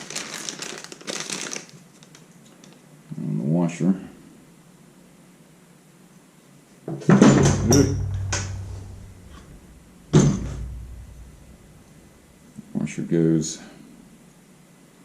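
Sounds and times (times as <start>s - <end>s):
metal parts knocking and clattering: 7.0s - 8.6s.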